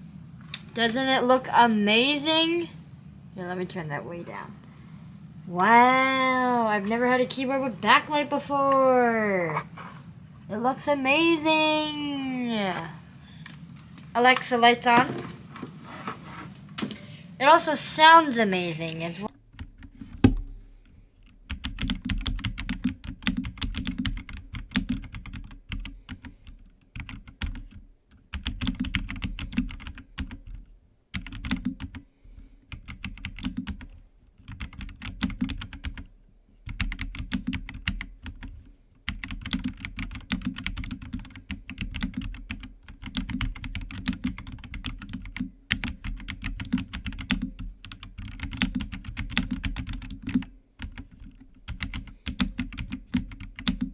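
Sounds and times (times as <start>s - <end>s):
mechanical keyboard typing: 21.5s - 26.2s, 26.9s - 32.0s, 32.7s - 36.0s, 36.7s - 38.5s, 39.1s - 53.9s.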